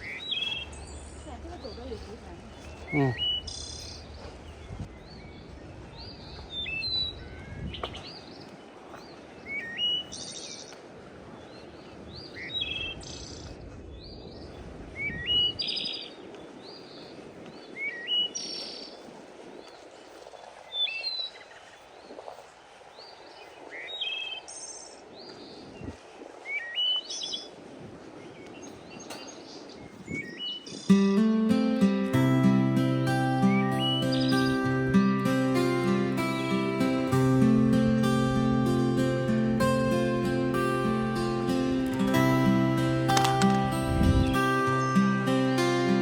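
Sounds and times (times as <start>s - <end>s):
songbird whistling: 30.2s - 37.1s
steady background hiss: 30.9s - 46.0s.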